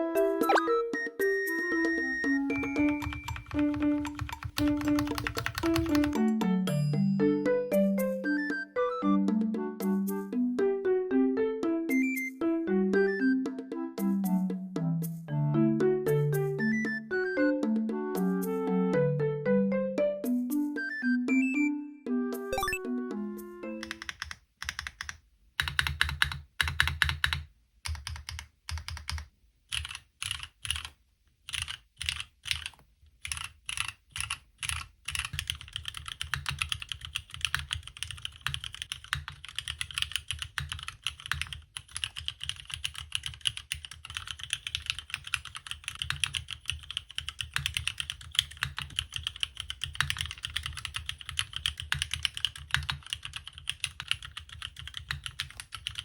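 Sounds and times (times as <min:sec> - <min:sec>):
mechanical keyboard typing: 0:02.5 - 0:06.3, 0:23.8 - 0:56.0.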